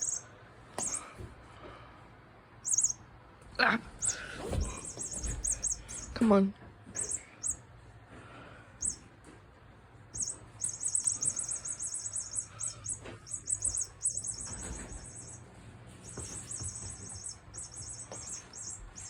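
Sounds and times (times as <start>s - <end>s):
toy mouse squeaky chirps: 0.0s - 0.2s, 2.6s - 3.0s, 4.0s - 6.2s, 7.0s - 7.6s, 8.8s - 9.0s, 10.2s - 15.4s, 16.0s - 19.0s.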